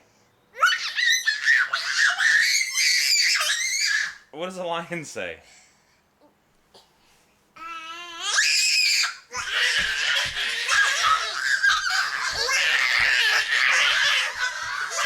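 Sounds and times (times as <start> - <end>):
toddler imitating a roar: 7.6 - 15.0
young children laughing and squealing: 8.3 - 15.0
dull thumps: 9.4 - 15.0.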